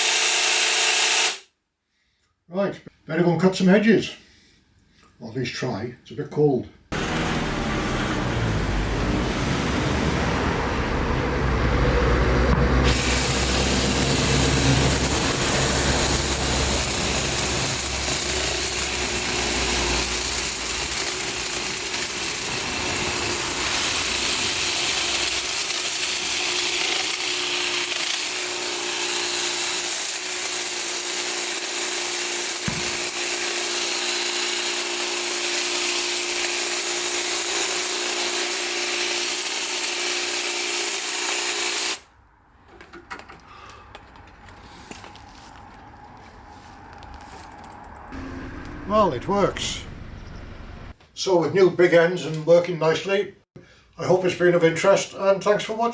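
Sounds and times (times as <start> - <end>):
hedge trimmer running: 7.0 - 8.9, 11.5 - 42.0.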